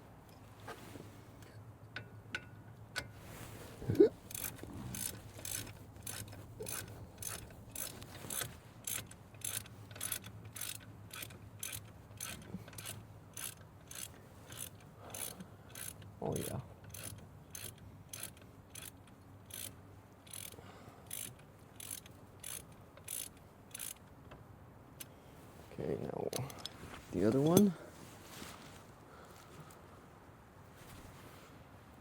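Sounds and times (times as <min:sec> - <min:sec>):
socket ratchet clicking: 0:04.3 - 0:24.1.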